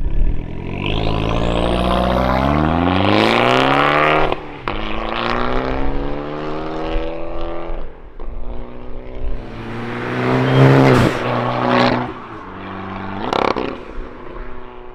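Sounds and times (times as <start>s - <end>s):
car exhaust accelerating: 9.2s - 14.9s.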